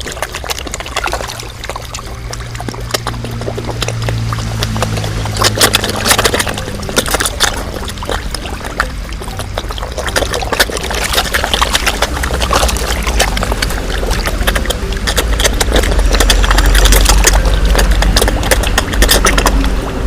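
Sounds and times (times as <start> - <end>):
pond water splashing and trickling: 0.0 - 20.0.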